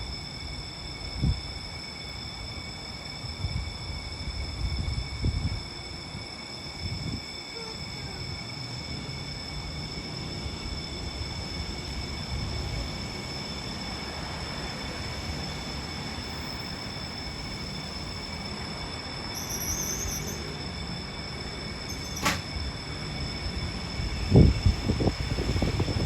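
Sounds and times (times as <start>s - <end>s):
high screech: 19.3s - 20.7s.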